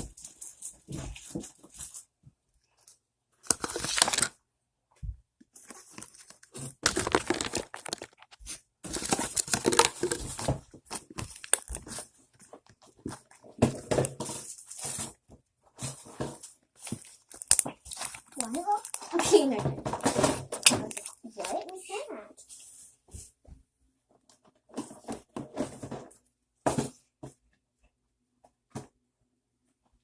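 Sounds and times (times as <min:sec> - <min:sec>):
slime squishing by hand: 0:05.2 - 0:22.0.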